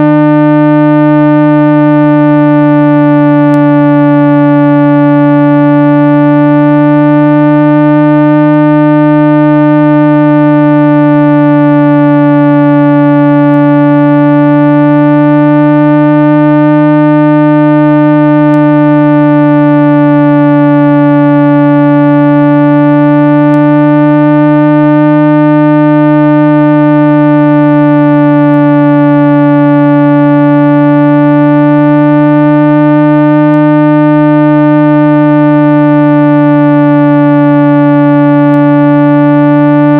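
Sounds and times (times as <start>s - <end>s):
synthesized hum with wavering pitch: 0.0s - 39.9s.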